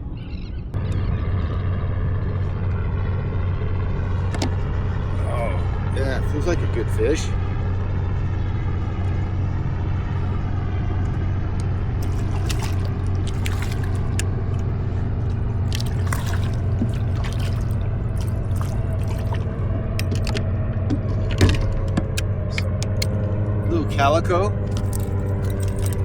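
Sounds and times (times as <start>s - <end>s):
boat engine humming: 0.0s - 26.0s
water splashing and dripping: 12.0s - 23.0s, 24.7s - 26.0s.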